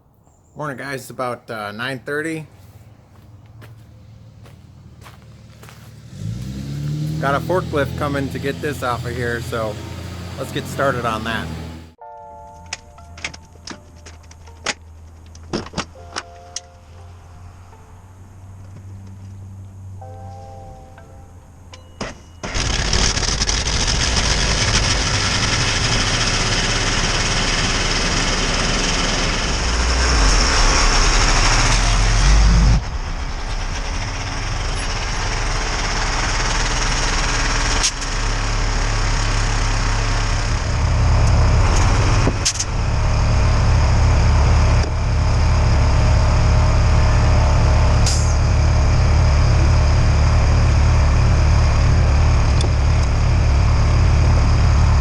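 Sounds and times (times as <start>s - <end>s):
forklift engine revving: 3.6s - 12.0s, 22.4s - 55.0s.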